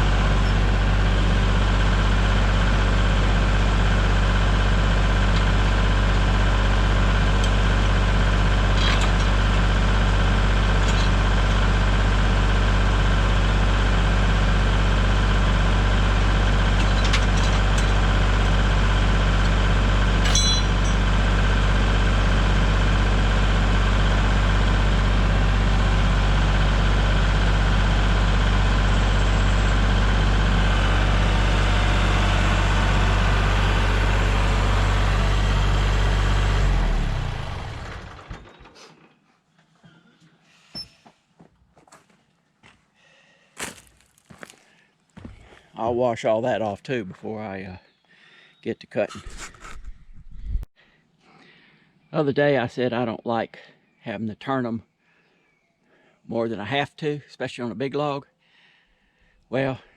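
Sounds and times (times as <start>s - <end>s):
engine idling: 0.0s - 39.0s.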